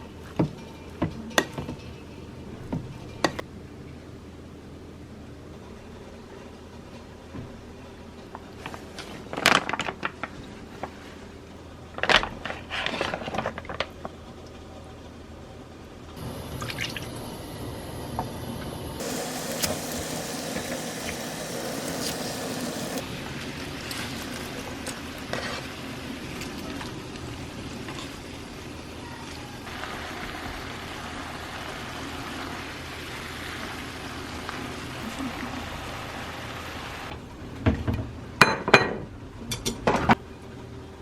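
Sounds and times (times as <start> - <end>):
water running: 16.2 - 37.1.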